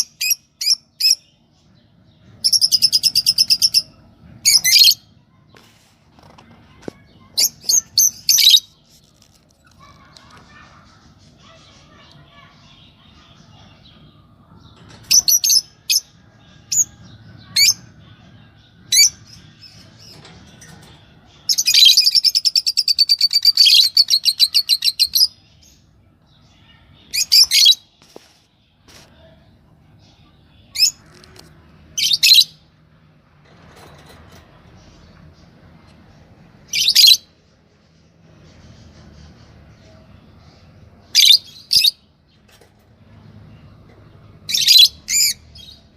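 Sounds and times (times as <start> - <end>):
lovebirds chirping: 0.0 - 5.7, 33.7 - 45.9.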